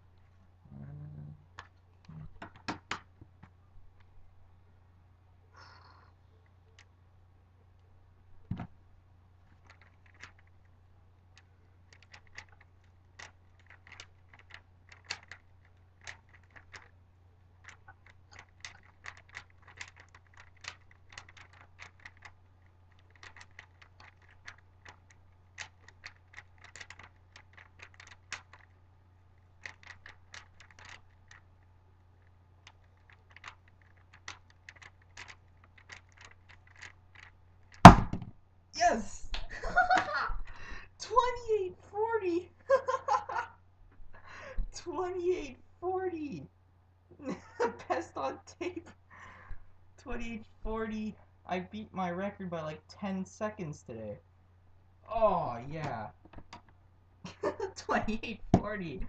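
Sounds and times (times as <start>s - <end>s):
thump: 8.5s - 8.7s, 37.8s - 38.3s
plastic puzzle cube clicking: 9.5s - 10.6s, 11.3s - 17.0s, 17.6s - 28.8s, 29.4s - 31.6s, 32.2s - 38.3s.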